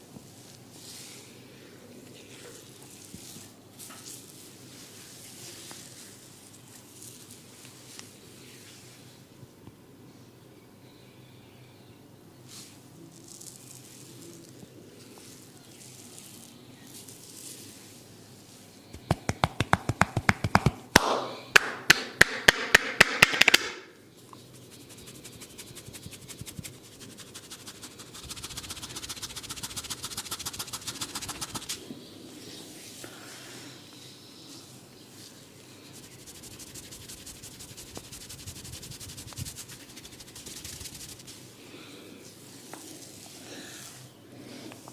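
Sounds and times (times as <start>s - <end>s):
light fast patting: 19.0s - 20.8s, 25.0s - 31.8s
sharp tapping on head: 19.0s - 23.8s.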